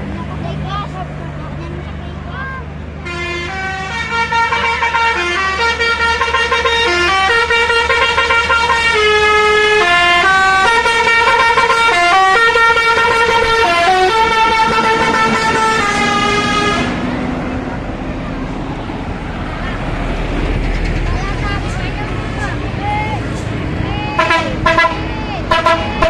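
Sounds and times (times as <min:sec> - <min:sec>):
bus horn playing a melody: 0:03.0 - 0:17.0, 0:24.2 - 0:26.0.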